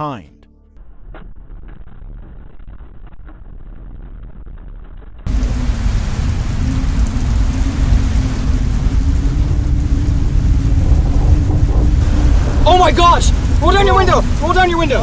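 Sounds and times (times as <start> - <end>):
heavy rain: 5.3 - 15.0
steady low hum: 5.3 - 15.0
wind noise: 5.3 - 15.0.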